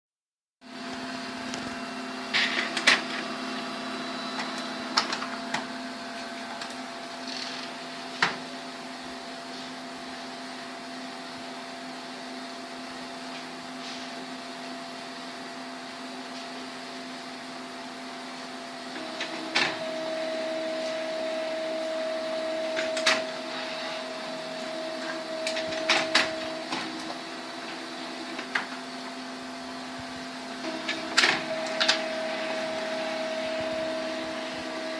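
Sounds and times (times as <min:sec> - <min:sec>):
higher printer tone: 0:00.7 - 0:16.3, 0:17.6 - 0:34.9
laser printer motor hum: 0:00.7 - 0:34.9
printer mechanism clicks: 0:22.8 - 0:23.3, 0:30.7 - 0:32.1.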